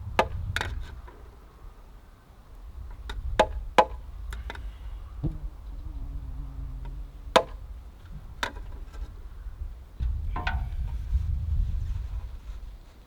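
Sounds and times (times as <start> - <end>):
low steady hum: 4.0 - 11.7.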